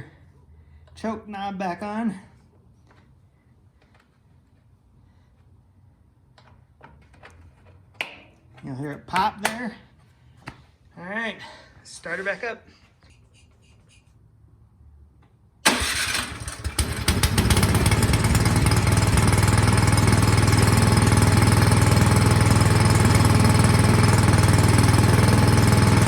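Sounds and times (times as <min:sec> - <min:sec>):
snowblower engine starting and running: 0:15.6 - 0:26.0.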